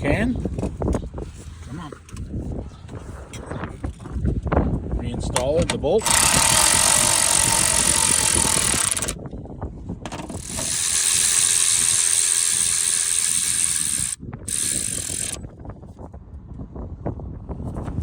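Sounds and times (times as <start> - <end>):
electric ratchet running: 6.0 - 9.2, 10.1 - 15.4.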